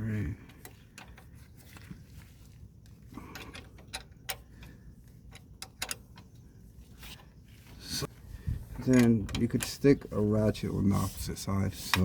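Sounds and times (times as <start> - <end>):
metal clicks of bolt fitting: 3.3 - 6.3, 8.8 - 9.9.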